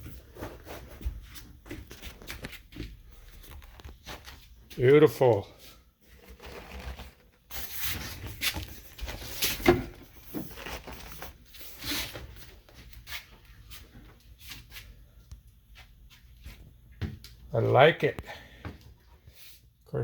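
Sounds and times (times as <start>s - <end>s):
fabric cover rustling: 6.2s - 13.2s.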